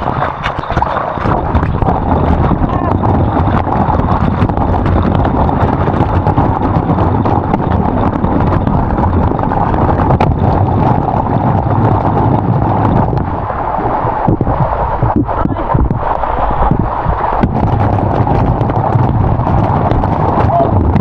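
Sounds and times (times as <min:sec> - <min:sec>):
waterfall rushing: 0:13.3 - 0:20.8.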